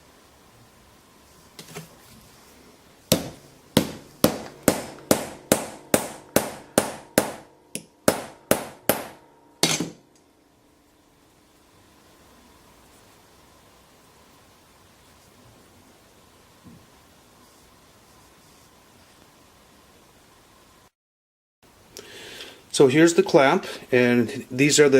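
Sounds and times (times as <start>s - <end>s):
hammer blows: 3.1s - 10.0s.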